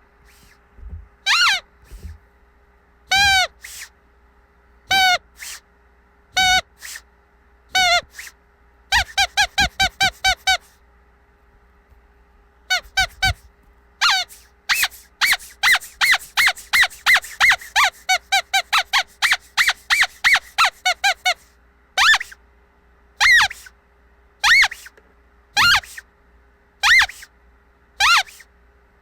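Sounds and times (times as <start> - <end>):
squeaky dog toy squeaking: 1.2 - 2.2, 3.1 - 3.9, 4.9 - 5.6, 6.4 - 7.0, 7.7 - 10.8, 12.7 - 13.4, 14.0 - 22.4, 23.2 - 23.7, 24.4 - 24.9, 25.6 - 26.0, 26.8 - 27.3, 28.0 - 28.5.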